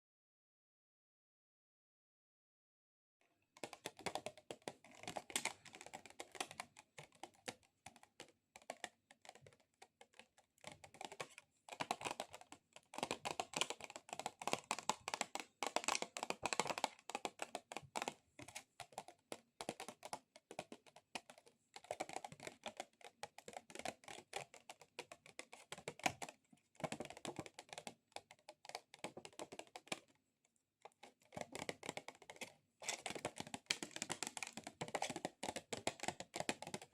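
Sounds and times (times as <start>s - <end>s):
fingernails tapping on plastic: 31.0s - 36.9s.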